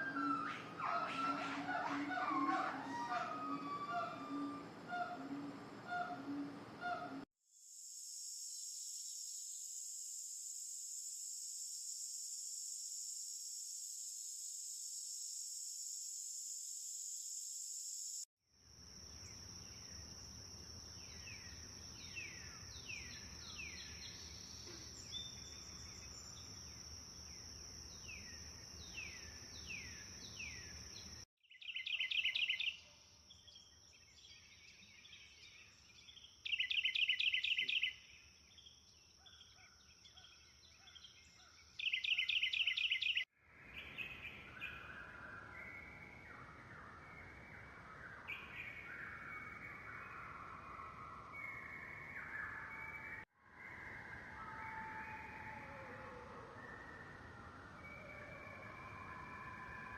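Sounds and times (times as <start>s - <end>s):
high-pitched insect drone: 7.6s - 22.6s.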